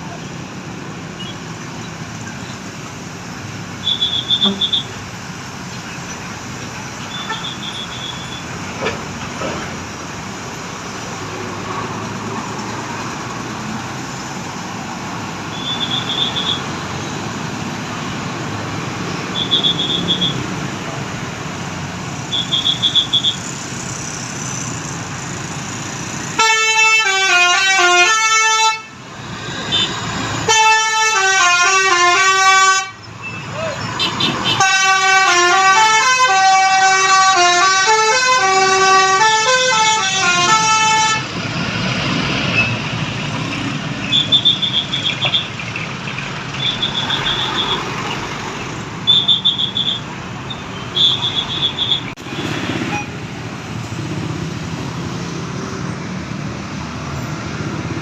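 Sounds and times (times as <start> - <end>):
road traffic: 0.0 - 58.0
bus horn playing a tune: 3.8 - 5.0, 7.1 - 8.4, 26.4 - 29.0, 29.7 - 33.0, 34.0 - 41.3.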